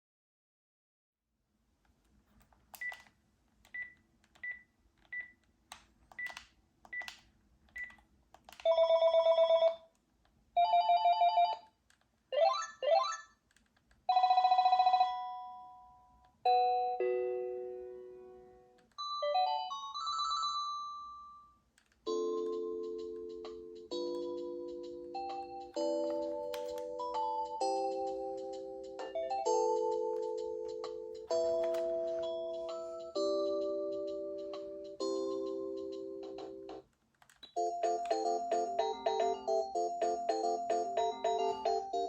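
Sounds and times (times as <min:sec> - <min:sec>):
phone key beeps with clicks: 0:02.8 - 0:03.1, 0:06.2 - 0:07.2, 0:07.8 - 0:08.0
electronic phone ringtones: 0:08.7 - 0:09.8, 0:10.6 - 0:11.7.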